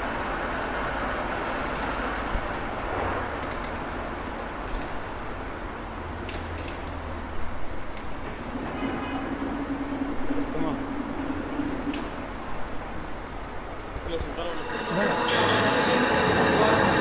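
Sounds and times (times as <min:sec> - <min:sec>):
high-pitched whine: 0:00.0 - 0:01.8, 0:08.1 - 0:12.0
lower whine: 0:00.0 - 0:01.8, 0:08.0 - 0:12.0
metal lathe running: 0:00.0 - 0:01.8, 0:08.1 - 0:12.0, 0:14.5 - 0:17.0.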